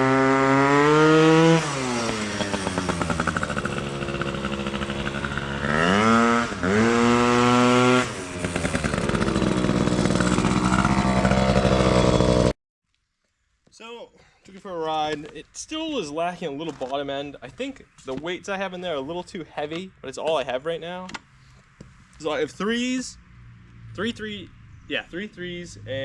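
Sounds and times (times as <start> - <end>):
scooter engine revving: 0.0 - 12.6.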